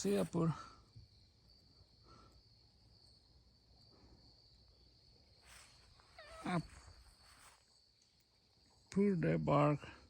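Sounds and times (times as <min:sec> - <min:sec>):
insects trilling: 0:00.0 - 0:10.0
soft rustle: 0:05.4 - 0:08.2.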